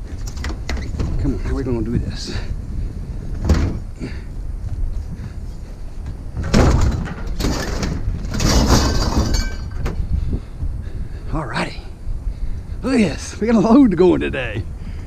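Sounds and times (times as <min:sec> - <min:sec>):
scrap clattering and scraping: 0:06.4 - 0:10.0.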